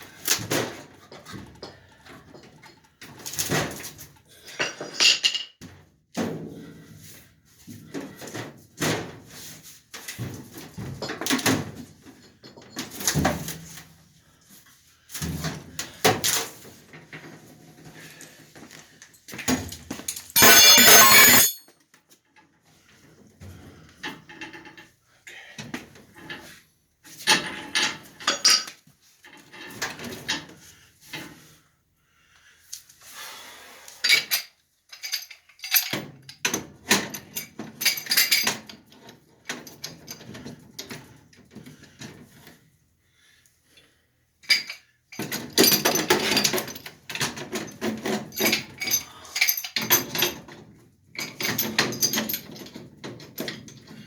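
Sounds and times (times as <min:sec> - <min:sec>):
metal clanking and rattling: 0:20.4 - 0:21.6.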